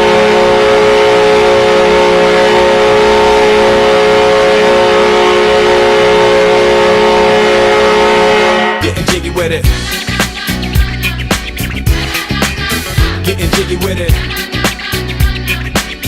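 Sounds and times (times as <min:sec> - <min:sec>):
goal horn blast: 0:00.0 - 0:09.0.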